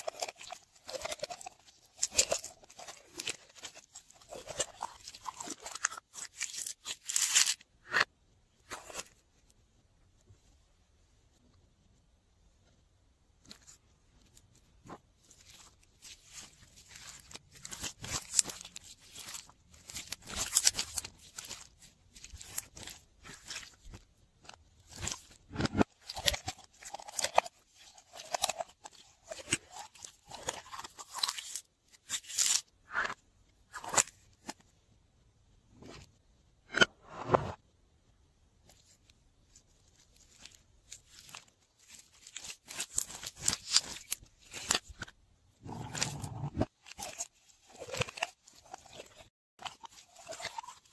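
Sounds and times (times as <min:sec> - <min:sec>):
slime squelching: 0:45.6 - 0:50.9.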